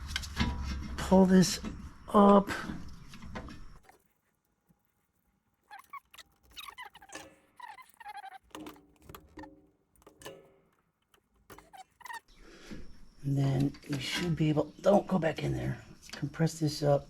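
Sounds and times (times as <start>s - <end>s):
metal parts squeaking and clicking: 3.0s - 14.9s.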